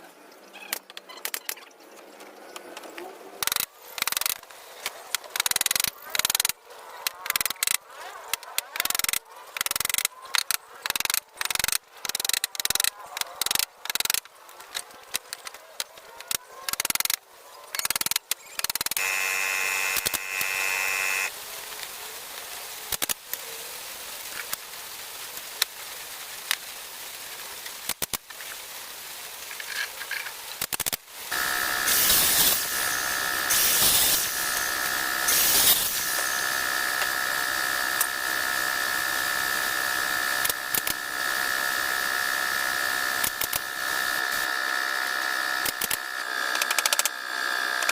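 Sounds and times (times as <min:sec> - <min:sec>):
power tool motor whining: 0:19.0 - 0:21.3, 0:31.3 - 0:47.9.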